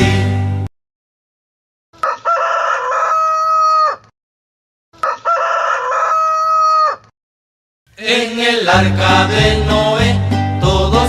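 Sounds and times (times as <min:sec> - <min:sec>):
rooster crowing: 0:02.0 - 0:04.1, 0:05.0 - 0:07.1.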